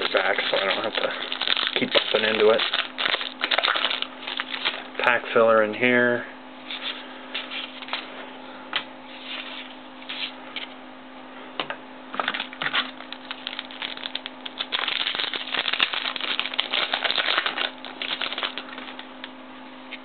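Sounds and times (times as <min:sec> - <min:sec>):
cards clicking and rustling: 0:00.0 - 0:04.8, 0:12.2 - 0:19.1
wrapper crinkling: 0:00.0 - 0:04.9, 0:12.3 - 0:19.1.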